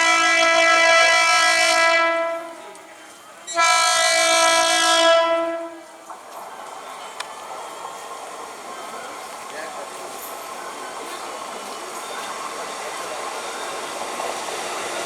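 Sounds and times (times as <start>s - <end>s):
train horn blasts: 0.0s - 2.6s, 3.5s - 5.9s
train running: 0.0s - 15.0s.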